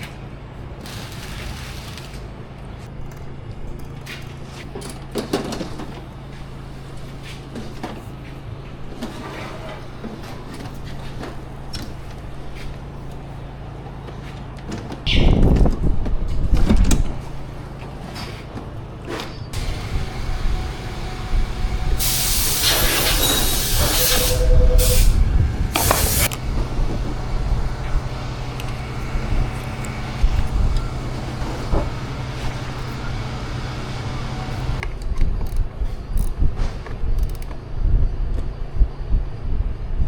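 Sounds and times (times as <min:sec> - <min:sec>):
low machine hum: 0:05.6 - 0:40.0
loud pressurized air hissing: 0:19.6 - 0:27.6.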